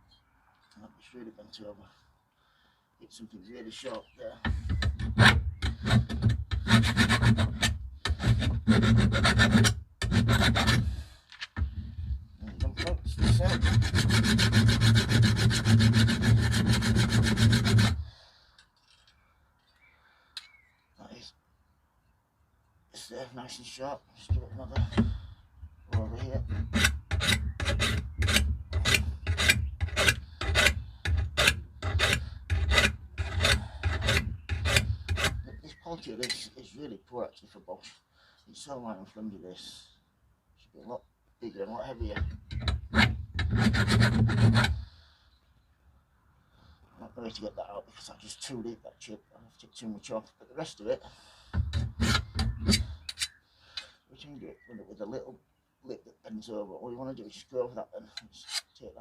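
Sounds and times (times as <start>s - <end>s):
hand file rasping on steel blade: 5.0s - 11.0s, 12.6s - 18.0s, 26.0s - 35.4s, 42.6s - 44.9s, 51.8s - 53.3s.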